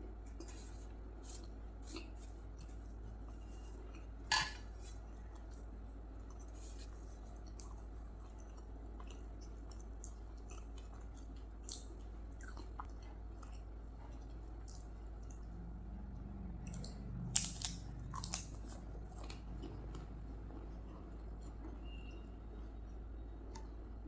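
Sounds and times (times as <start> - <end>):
steady low hum: 0.0 - 24.0
wet chewing: 4.8 - 15.7, 16.5 - 22.2.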